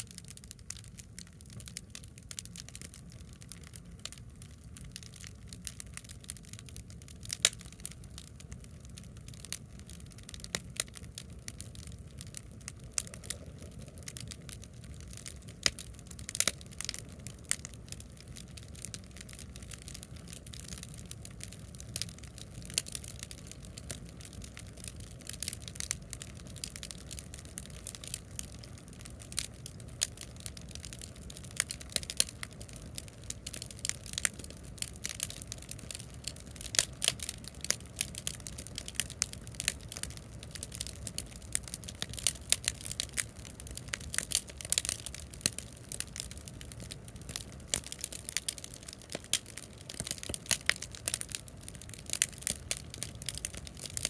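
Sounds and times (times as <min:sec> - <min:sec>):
bonfire crackling and popping: 0:00.0 - 0:54.0
low steady rumble: 0:00.0 - 0:54.0.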